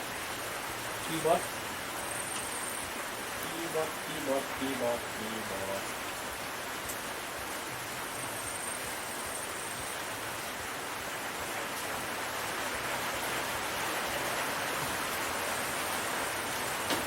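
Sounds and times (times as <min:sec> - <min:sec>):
steady hissing noise: 0:00.0 - 0:17.0.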